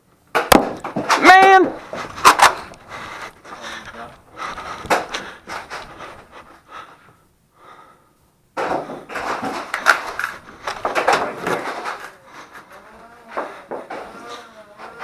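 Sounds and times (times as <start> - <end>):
person panting heavily: 1.8 - 9.2, 12.1 - 14.3.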